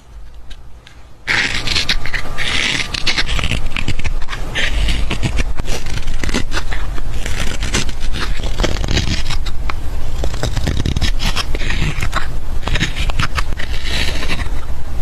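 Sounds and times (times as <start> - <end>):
steady low rumble: 0.0 - 15.0.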